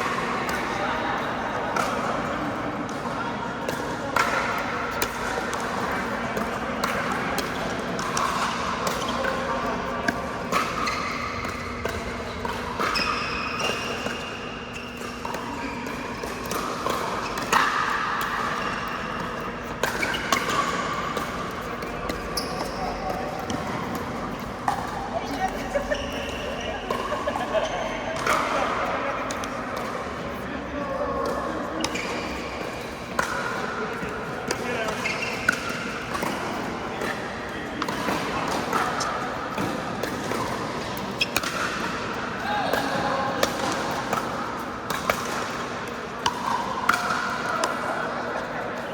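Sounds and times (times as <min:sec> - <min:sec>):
shoes squeaking on court floor: 0:07.1 - 0:30.5, 0:34.6 - 0:39.6, 0:40.3 - 0:43.3.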